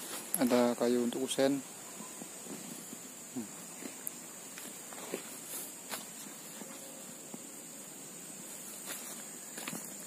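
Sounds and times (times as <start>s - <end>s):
steady high-pitched hum: 0.0s - 10.0s
footsteps: 3.7s - 7.5s, 8.3s - 10.0s.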